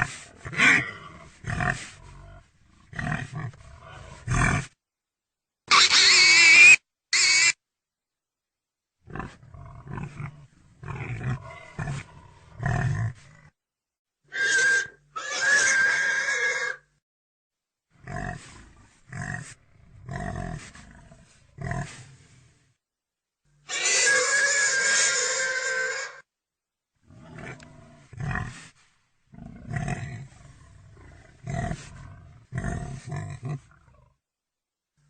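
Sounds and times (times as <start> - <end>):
pig grunting: 0.0 - 4.8, 9.0 - 13.6, 18.0 - 22.4, 27.1 - 28.6, 29.3 - 34.2
pig squealing: 5.7 - 7.6, 14.3 - 16.8, 23.7 - 26.2.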